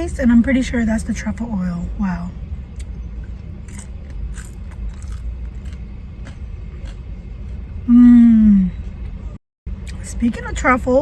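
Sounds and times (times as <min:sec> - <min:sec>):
low rumble: 0:00.0 - 0:11.0
chewing crispy fries: 0:02.8 - 0:07.6
person humming mmm: 0:07.9 - 0:08.8.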